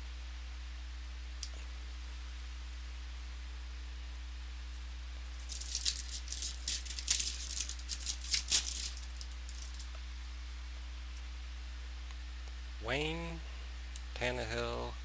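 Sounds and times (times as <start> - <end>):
card pack wrapper crinkling and tearing: 5.3 - 9.9.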